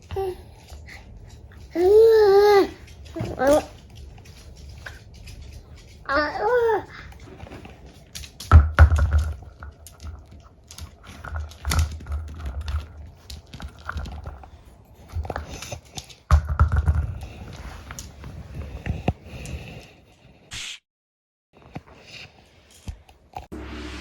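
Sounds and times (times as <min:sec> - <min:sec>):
object clicking and knocking on floor: 0:08.0 - 0:14.3, 0:15.1 - 0:18.1.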